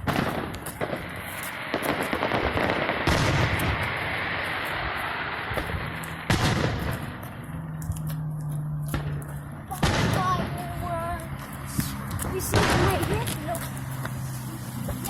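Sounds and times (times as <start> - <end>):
fireworks popping and crackling: 0.0 - 15.0
sharp firework bang: 1.7 - 3.9, 5.5 - 7.1, 12.5 - 13.3.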